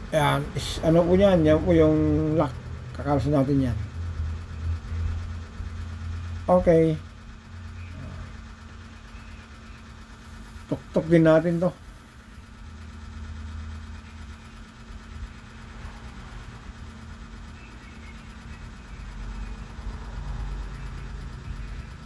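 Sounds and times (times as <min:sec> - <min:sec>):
vehicle engine idling: 0:00.0 - 0:22.0.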